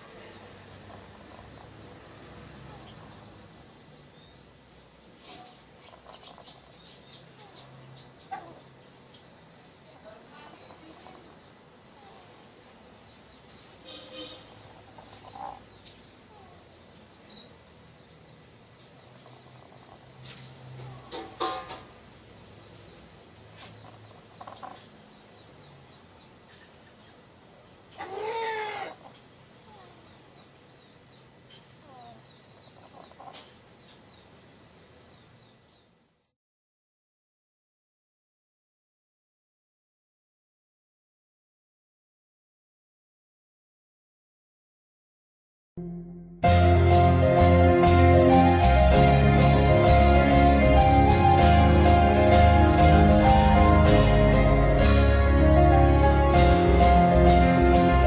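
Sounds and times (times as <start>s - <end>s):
chickens chirping and calling: 0.1s - 21.6s, 22.7s - 34.4s
high-pitched bird chirping: 2.4s - 4.8s.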